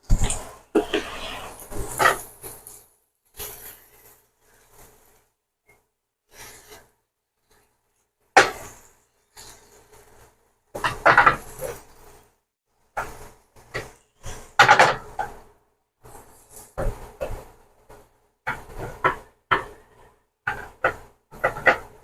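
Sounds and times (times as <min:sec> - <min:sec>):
pots and pans clattering: 0:20.5 - 0:22.0.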